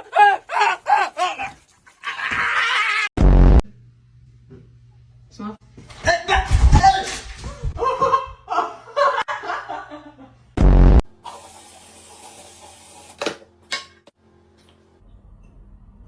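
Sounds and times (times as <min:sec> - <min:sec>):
people laughing: 0:07.7 - 0:10.4
very loud blast: 0:10.6 - 0:11.1.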